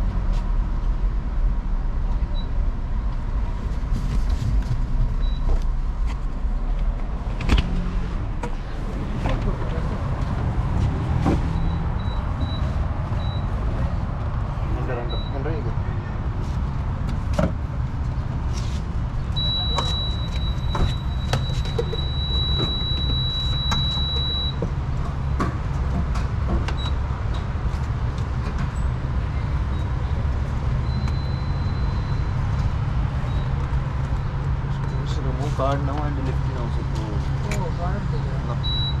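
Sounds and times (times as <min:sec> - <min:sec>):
car engine and tyre rumble: 0:00.0 - 0:39.0.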